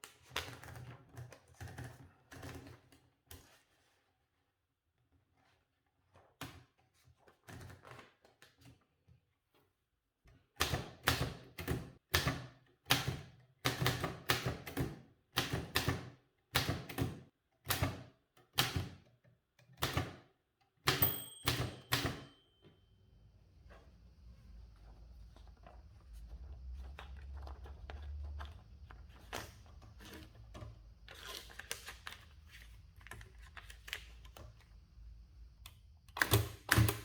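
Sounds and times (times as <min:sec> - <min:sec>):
typewriter bell ring: 0:20.9 - 0:22.6.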